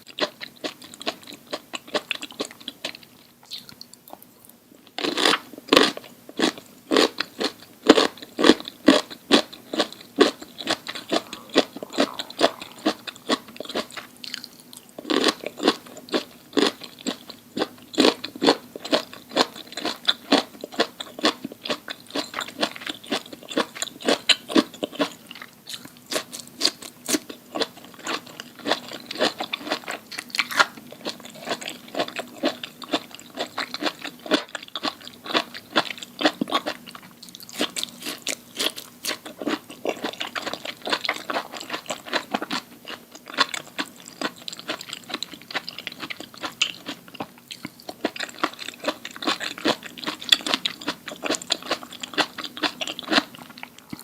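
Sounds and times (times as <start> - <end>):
crunchy chewing of food: 0.0 - 54.0.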